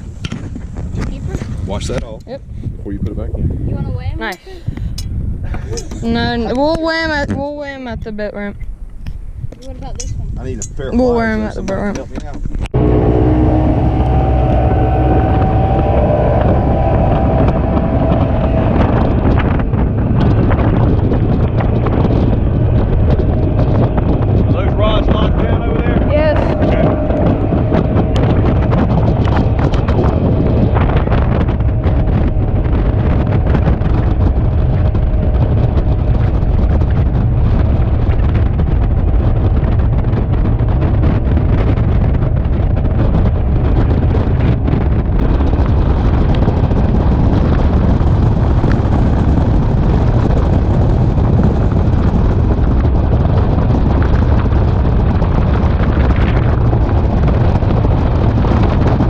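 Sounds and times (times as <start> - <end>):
wind buffeting microphone: 0.0 - 59.0
boat motor drone: 12.5 - 59.0.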